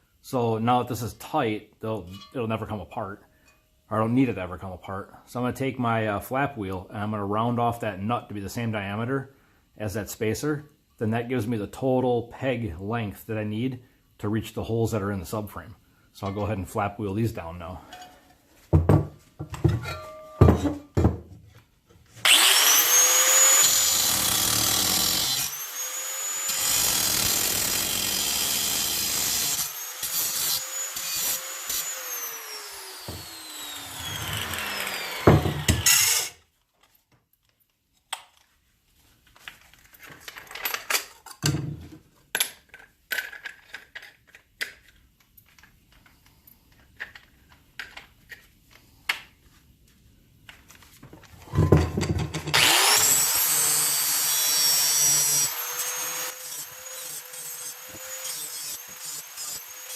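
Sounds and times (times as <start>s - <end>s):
grinder whining: 22.2s - 36.4s, 51.5s - 59.9s.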